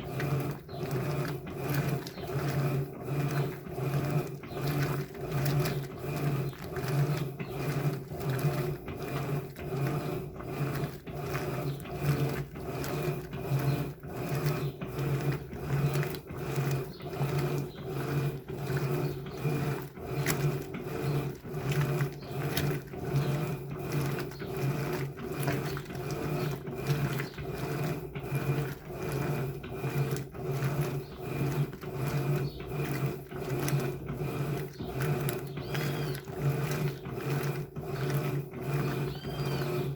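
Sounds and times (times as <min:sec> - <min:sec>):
washing machine agitating: 0:00.0 - 0:39.9.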